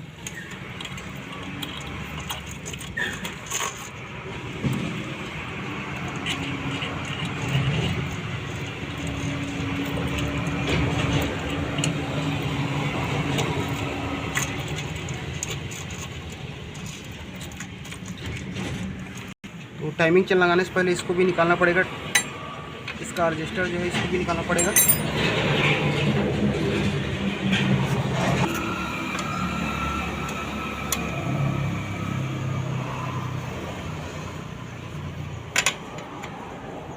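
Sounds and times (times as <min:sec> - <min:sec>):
vehicle engine hum: 0:00.0 - 0:36.9
metal chain and tools rattling: 0:24.5 - 0:25.5.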